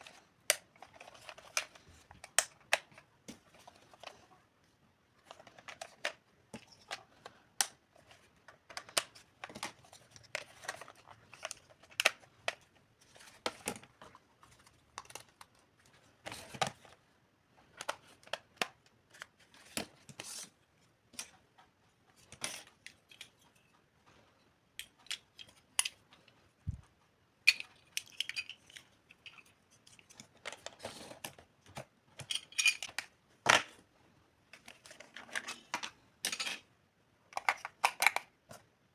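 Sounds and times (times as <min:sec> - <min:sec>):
toy pieces clicking and tapping: 0:27.5 - 0:29.5.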